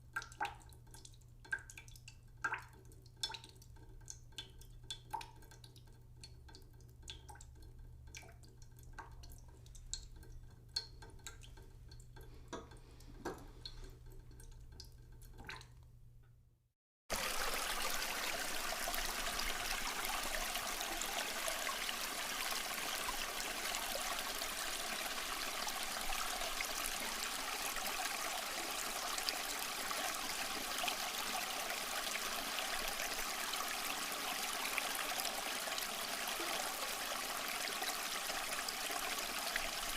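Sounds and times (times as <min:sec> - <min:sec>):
faint drips: 0:00.0 - 0:16.4
rush of running water: 0:17.1 - 0:39.9.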